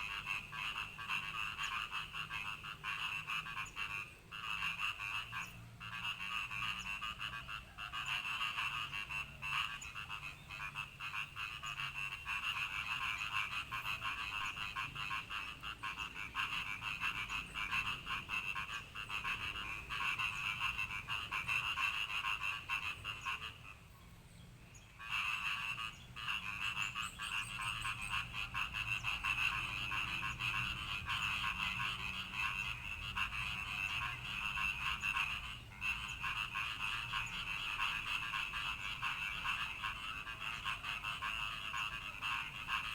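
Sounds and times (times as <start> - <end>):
frogs croaking: 0.0 - 23.8, 24.8 - 42.9.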